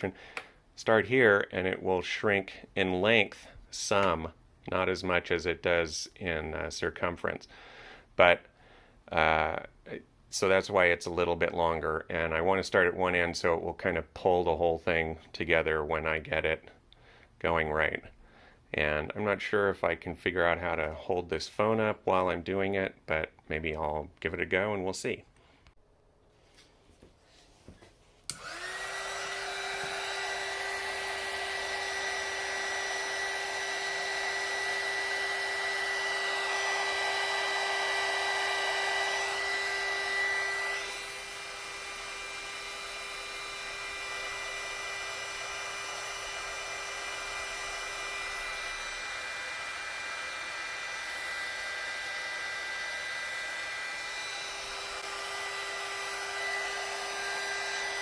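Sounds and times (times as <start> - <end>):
heat gun fan whine and hiss: 27.7 - 58.0.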